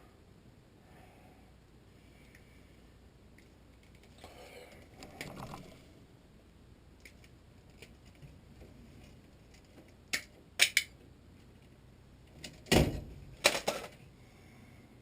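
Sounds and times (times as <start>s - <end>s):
rustle and scrape of wiring: 3.4s - 5.9s, 7.0s - 10.4s.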